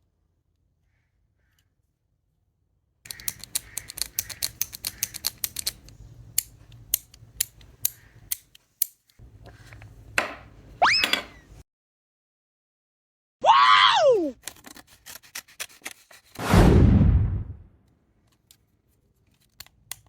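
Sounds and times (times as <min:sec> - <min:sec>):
plastic fidget toy clicking: 0:03.1 - 0:09.0.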